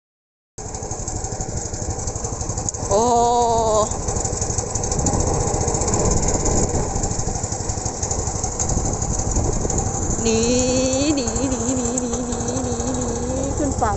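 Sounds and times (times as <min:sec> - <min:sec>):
boat engine running: 0:00.6 - 0:13.9
wind noise: 0:04.9 - 0:07.3, 0:08.6 - 0:10.4.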